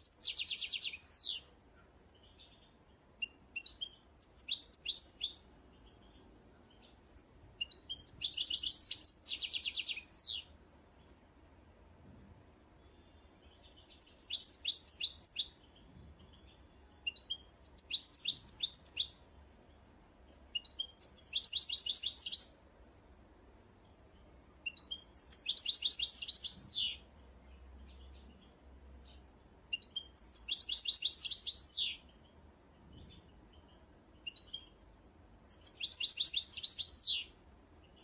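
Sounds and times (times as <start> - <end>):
songbird singing chirps and trill: 0.0 - 38.0.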